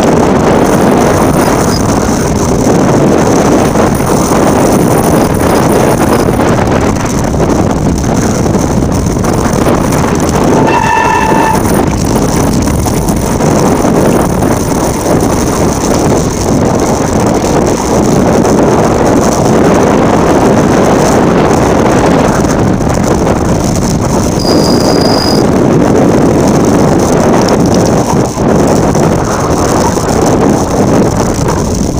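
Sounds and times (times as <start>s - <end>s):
tyres rumbling over loose ground: 0.0s - 31.9s
wind rushing over microphone: 0.0s - 31.9s
high-pitched squeak: 0.6s - 2.2s, 10.6s - 11.9s, 24.4s - 25.4s.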